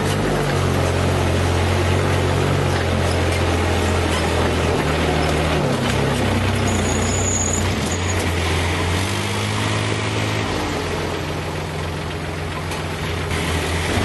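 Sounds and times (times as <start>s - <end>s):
excavator diesel engine running: 0.0s - 14.0s.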